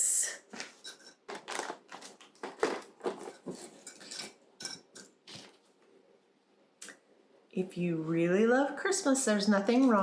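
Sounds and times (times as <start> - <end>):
packaging rustling: 0.5 - 4.4
items clacking: 0.5 - 5.8.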